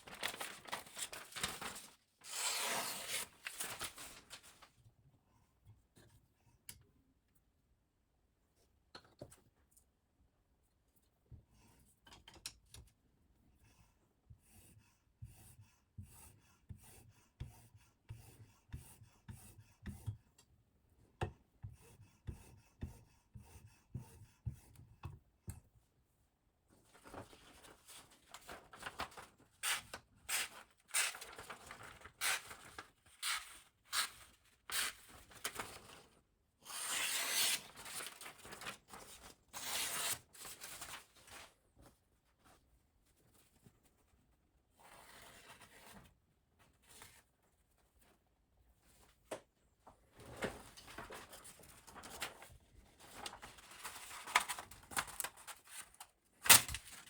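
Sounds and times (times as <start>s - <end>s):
knife slicing through paper: 0.1s - 4.2s, 29.6s - 35.7s, 36.6s - 38.8s, 39.5s - 40.9s.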